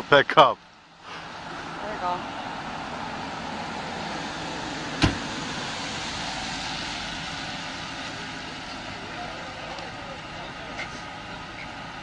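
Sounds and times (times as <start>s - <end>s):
outdoor background noise: 0.0s - 12.0s
sharp knock: 5.0s - 5.2s.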